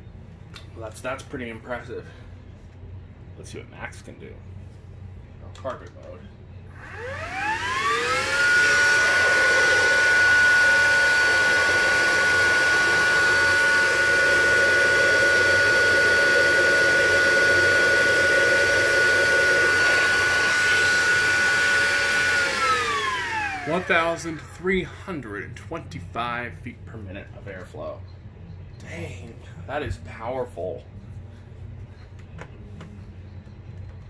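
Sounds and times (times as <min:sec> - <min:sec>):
cordless vacuum whine: 0:06.7 - 0:24.6.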